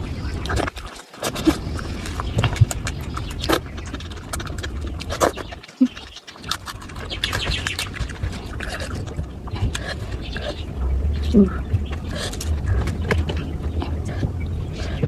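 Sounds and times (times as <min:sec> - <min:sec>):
person chewing: 0:00.0 - 0:10.8, 0:11.4 - 0:15.0
wet mouth clicks and smacks: 0:00.4 - 0:10.5.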